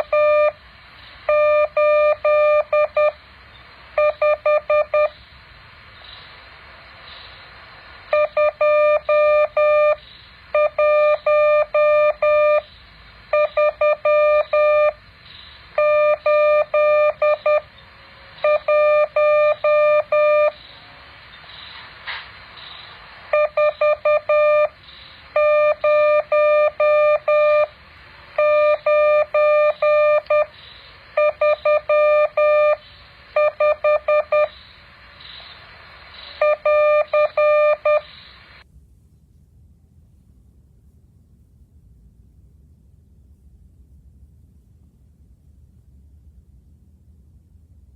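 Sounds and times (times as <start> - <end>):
morse code beeps: 0.0 - 0.6, 1.3 - 3.2, 4.0 - 5.2, 8.1 - 12.7, 13.3 - 15.0, 15.8 - 17.7, 18.4 - 20.6, 23.3 - 24.8, 25.4 - 27.7, 28.4 - 30.5, 31.2 - 32.8, 33.4 - 34.6, 36.4 - 38.6.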